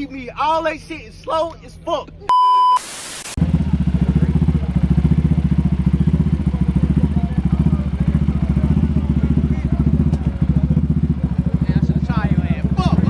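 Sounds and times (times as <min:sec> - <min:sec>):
quad engine idling: 0:03.4 - 0:13.0.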